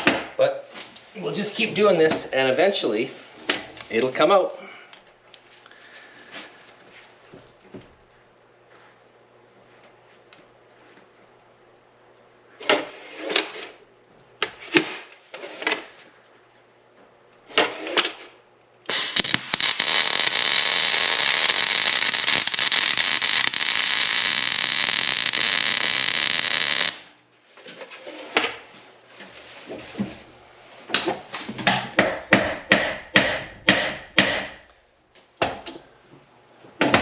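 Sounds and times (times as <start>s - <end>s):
welding arc crackle and hiss: 18.9s - 27.2s.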